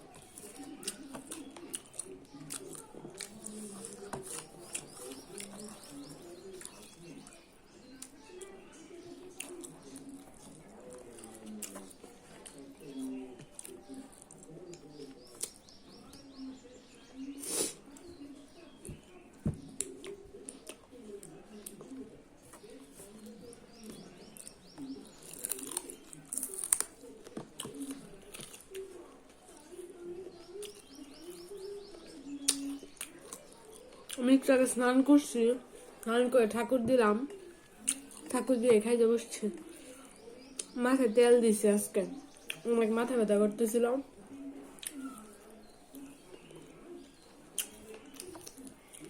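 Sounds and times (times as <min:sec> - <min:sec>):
chewing a bone: 0:00.0 - 0:16.2, 0:19.6 - 0:34.2, 0:37.7 - 0:38.3, 0:44.6 - 0:49.0
teeth crunching food: 0:00.0 - 0:16.3, 0:18.7 - 0:34.2, 0:37.7 - 0:38.4, 0:42.2 - 0:42.6, 0:44.6 - 0:49.0.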